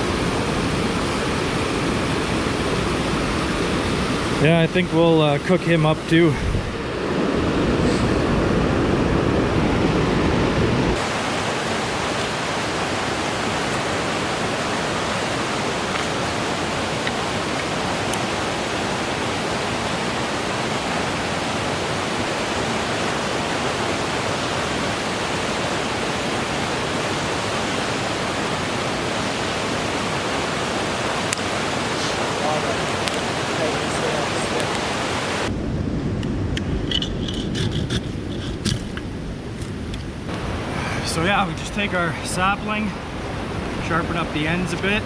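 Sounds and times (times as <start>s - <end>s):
fast-flowing creek rushing: 10.9s - 35.5s.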